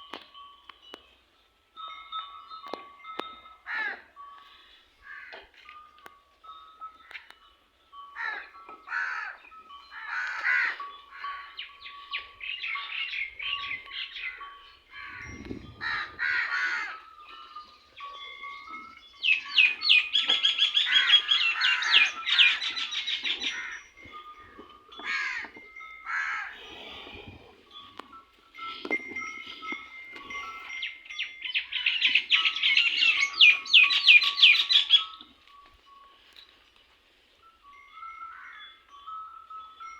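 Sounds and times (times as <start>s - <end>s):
crow-like caws: 3.7s - 4.0s, 5.0s - 5.5s, 8.2s - 9.4s, 10.0s - 11.5s, 15.0s - 17.0s, 20.8s - 22.6s, 25.0s - 25.5s, 26.1s - 26.6s
birds calling and chattering: 7.0s - 39.5s.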